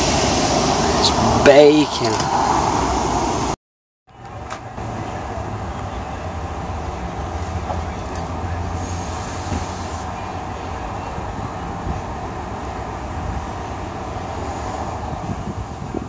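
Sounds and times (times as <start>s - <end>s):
car engine rumble: 0.0s - 16.0s.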